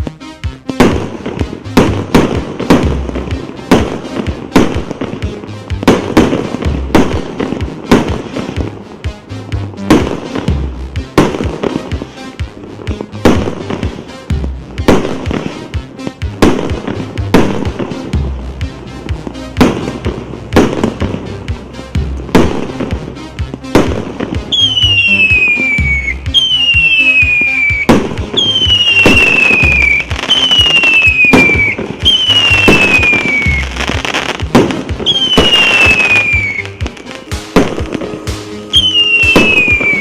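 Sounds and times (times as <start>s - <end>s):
firework shots: 0.0s - 40.0s
falling firework whistles: 24.5s - 34.3s, 35.0s - 36.7s, 38.7s - 40.0s.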